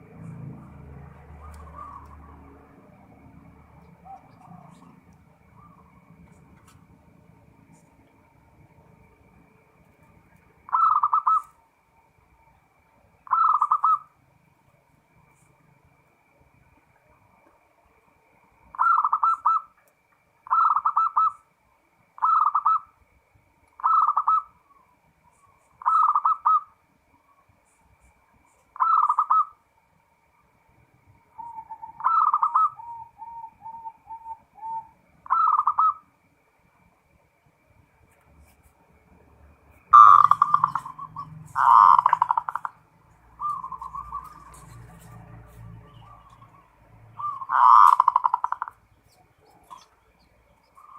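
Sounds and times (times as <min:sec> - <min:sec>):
dove cooing: 0:01.4 - 0:02.4, 0:03.9 - 0:06.4, 0:10.7 - 0:11.5, 0:13.3 - 0:14.1, 0:18.7 - 0:19.7, 0:20.4 - 0:21.4, 0:22.2 - 0:22.9, 0:23.8 - 0:26.7, 0:28.8 - 0:29.6, 0:31.4 - 0:36.1, 0:39.9 - 0:50.9.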